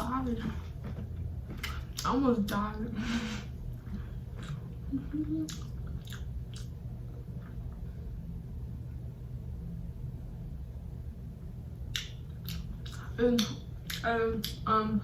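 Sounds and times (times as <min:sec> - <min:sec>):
steady low hum: 0:00.0 - 0:15.0
person chewing food: 0:00.4 - 0:02.1, 0:03.6 - 0:07.9, 0:11.9 - 0:14.6.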